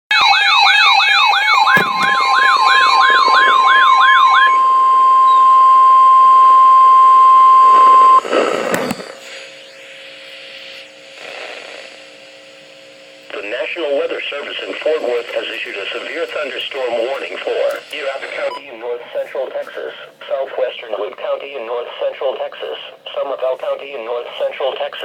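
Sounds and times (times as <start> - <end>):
electronic siren sweeping: 0.1 - 8.2
pulsing alarm tones: 0.1 - 8.2
steady warning tone: 0.1 - 9.9
faint hum: 1.8 - 25.0
static burst with clicks: 7.7 - 12.4.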